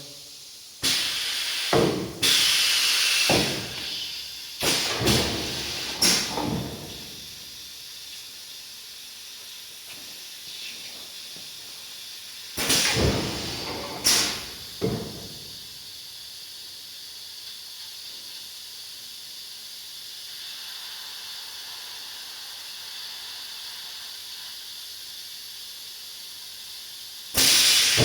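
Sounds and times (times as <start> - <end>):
air exhaust hissing: 0.0 - 28.0
pneumatic cylinders clunking: 0.8 - 7.6, 12.4 - 15.8, 27.3 - 28.0.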